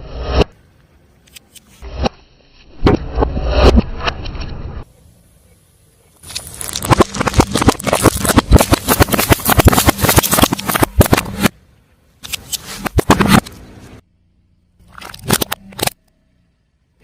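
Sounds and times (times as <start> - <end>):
objects crunching under car tyre: 6.2 - 11.5.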